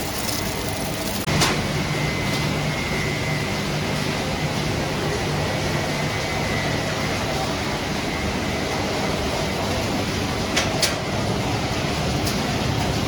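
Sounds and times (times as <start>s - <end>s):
machinery running: 0.0s - 2.0s.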